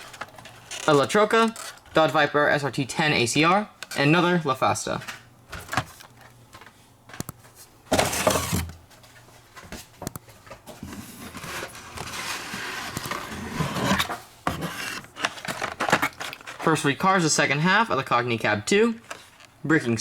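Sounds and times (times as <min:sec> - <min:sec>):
cardboard packaging rubbing: 0:10.8 - 0:16.6.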